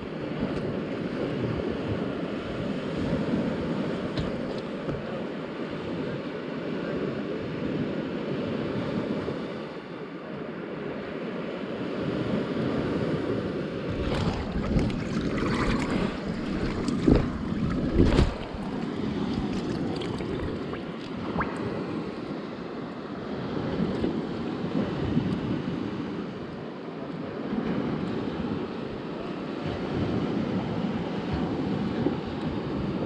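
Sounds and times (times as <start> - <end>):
ocean surf rushing: 13.7 - 24.4
wind buffeting microphone: 13.8 - 22.7.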